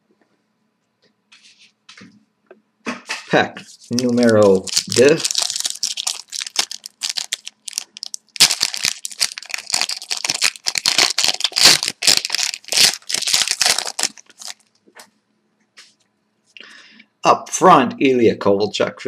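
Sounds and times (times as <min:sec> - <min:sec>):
wrapper tearing and crinkling: 0:03.8 - 0:14.7.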